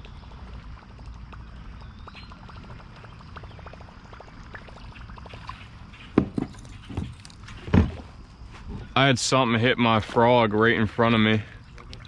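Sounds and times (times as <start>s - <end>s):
water splashing: 0.0s - 7.6s.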